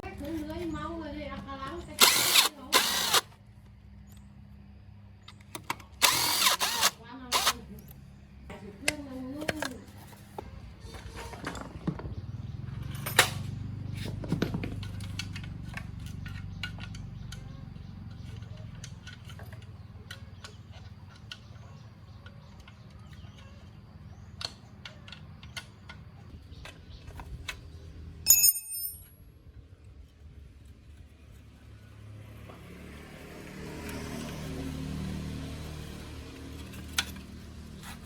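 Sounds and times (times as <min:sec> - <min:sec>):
metal tools clinking: 0:28.3 - 0:29.2.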